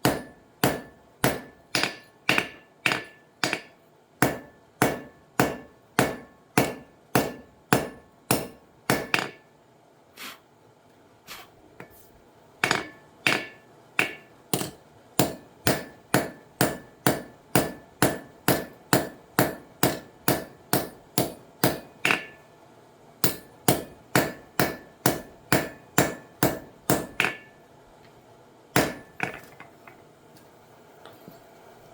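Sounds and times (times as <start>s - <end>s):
hammer striking an anvil: 0.0s - 9.5s, 12.6s - 22.4s, 23.2s - 27.6s, 28.8s - 29.7s.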